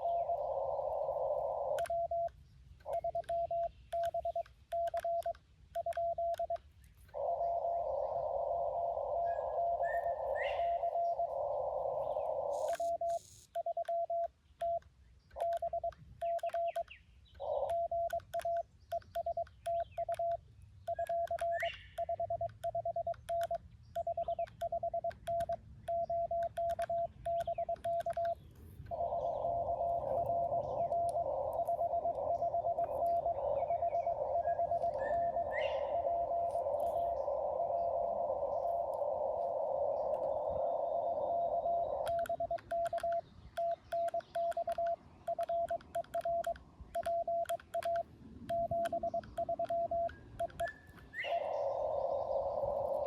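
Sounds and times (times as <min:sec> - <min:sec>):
bird chirping: 0:00.0 - 0:53.0
faint morse code signal: 0:01.1 - 0:06.6, 0:08.6 - 0:16.9, 0:17.5 - 0:51.4
morse sidetone beeps: 0:01.6 - 0:06.6, 0:12.5 - 0:14.8, 0:15.4 - 0:16.9, 0:17.6 - 0:36.7, 0:41.1 - 0:51.4
radio receiver hiss: 0:11.4 - 0:13.6.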